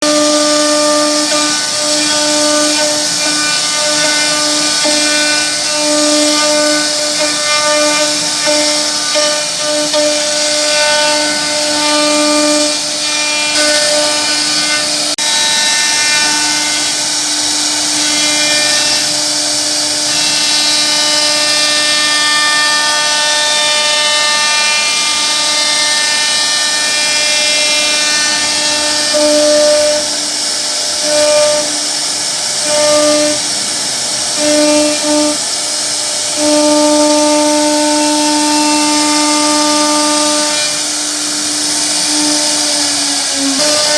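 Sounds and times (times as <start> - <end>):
wood cutting noise: 0.0 - 43.9
wood router high whine: 0.0 - 43.9.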